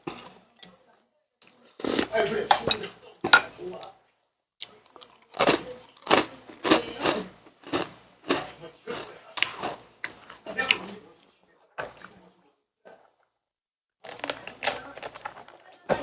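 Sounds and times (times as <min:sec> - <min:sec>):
chewing and crunching food: 0:01.4 - 0:03.9, 0:04.6 - 0:11.0, 0:14.0 - 0:16.0.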